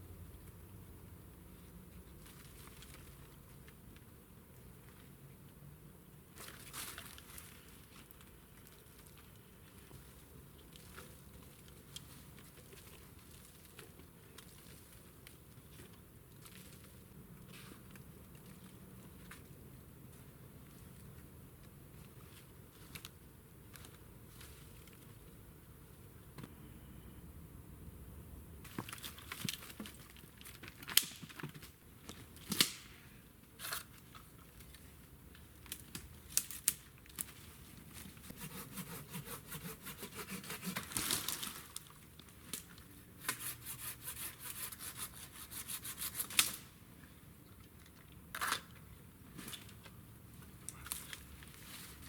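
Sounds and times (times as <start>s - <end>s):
wood snapping and cracking: 28.8s - 31.6s
rustling and scraping: 37.2s - 46.6s, 50.8s - 52.0s.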